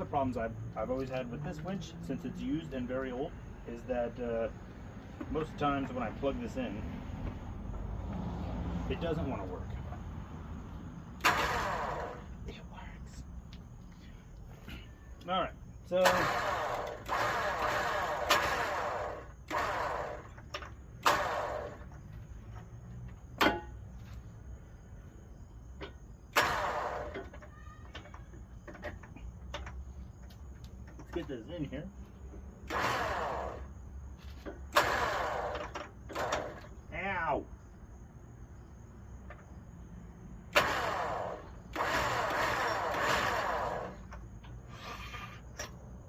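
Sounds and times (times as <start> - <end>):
electric winch motor: 11.2 - 12.3, 15.9 - 21.9, 26.3 - 28.1, 32.6 - 33.7, 34.7 - 36.7, 40.5 - 45.4.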